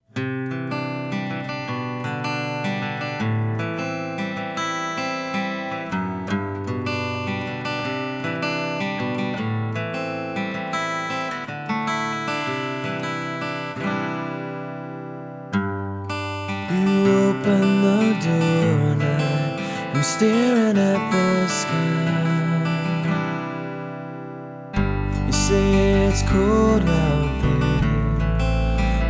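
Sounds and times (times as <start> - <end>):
acoustic guitar plucked and strummed: 0.0 - 29.0.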